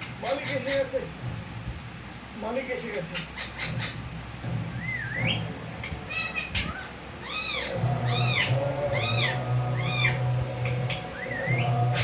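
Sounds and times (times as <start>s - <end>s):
parrot squawks: 0.0s - 0.9s, 3.1s - 4.0s, 4.7s - 12.0s
steady low hum: 0.0s - 12.0s
parrot meow-like calls: 4.8s - 12.0s.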